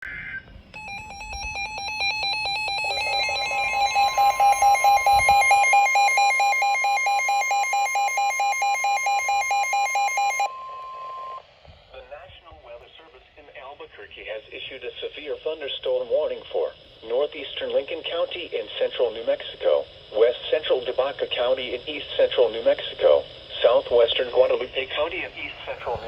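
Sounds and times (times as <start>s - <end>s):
steady high alarm tone: 0.7s - 13.5s
rapidly pulsing electronic beep: 0.8s - 11.4s.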